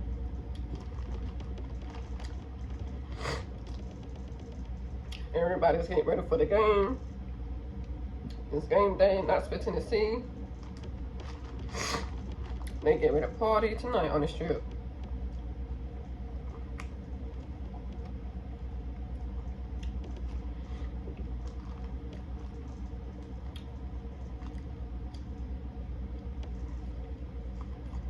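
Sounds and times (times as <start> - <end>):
steady low hum: 0.0 - 28.0
food being chewed: 0.4 - 5.3, 10.3 - 12.8, 16.4 - 25.5, 26.1 - 28.0.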